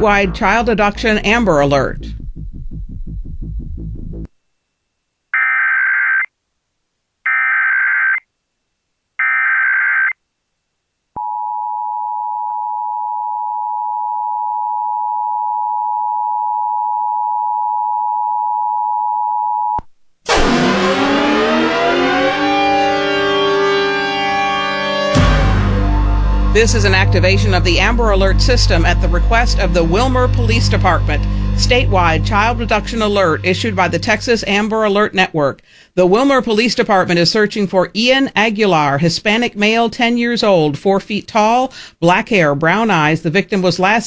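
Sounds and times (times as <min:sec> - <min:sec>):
siren rising in pitch: 0:00.0 - 0:04.3, 0:20.3 - 0:34.7.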